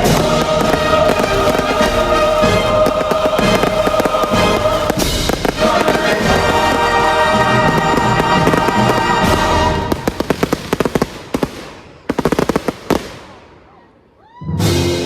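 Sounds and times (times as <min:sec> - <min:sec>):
music soundtrack: 0:00.0 - 0:10.5, 0:14.5 - 0:15.0
fireworks crackling: 0:00.0 - 0:13.8.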